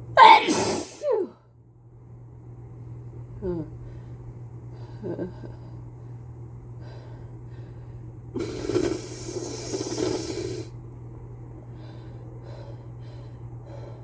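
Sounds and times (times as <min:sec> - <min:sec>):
long hissing breath: 0:06.8 - 0:10.8.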